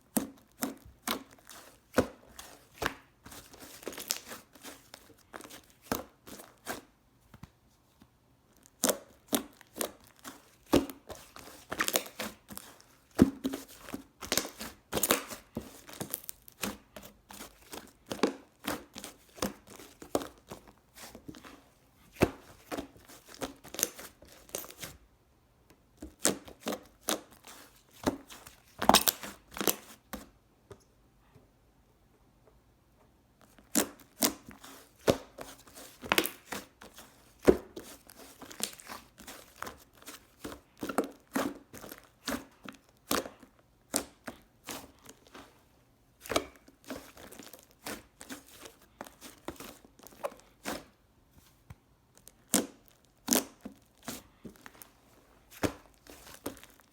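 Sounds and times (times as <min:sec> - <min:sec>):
slime squished by hand: 0:08.6 - 0:25.0, 0:52.2 - 0:54.9, 0:55.5 - 0:56.9.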